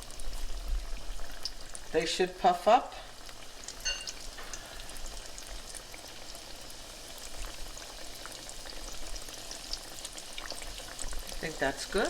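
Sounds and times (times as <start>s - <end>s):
dough frying in hot oil: 0.0s - 12.0s.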